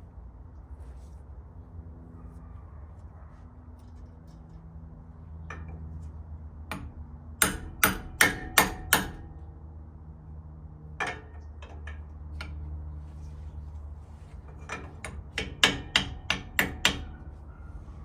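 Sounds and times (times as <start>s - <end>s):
hammer on metal: 6.7s - 9.4s, 14.7s - 17.3s.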